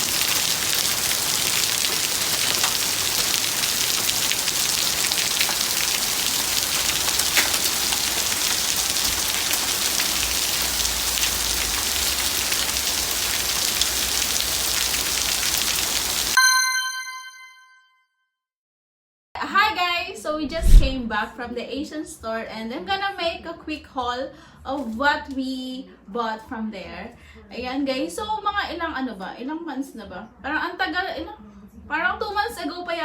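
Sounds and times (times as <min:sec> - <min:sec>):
hail and rain pelting: 0:00.0 - 0:16.4.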